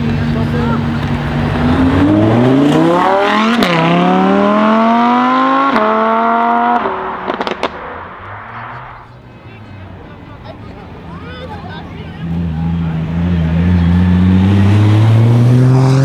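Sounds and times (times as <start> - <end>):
sports car engine accelerating: 0.0 - 16.0
exhaust pops: 5.0 - 9.3.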